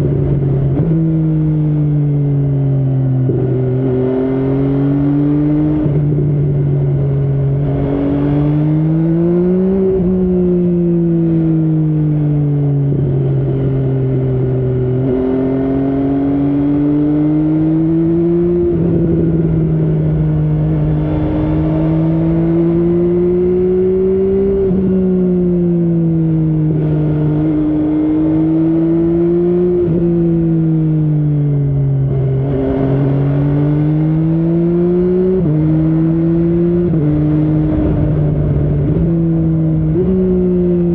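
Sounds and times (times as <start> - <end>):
motorcycle engine running: 17.4 - 40.9.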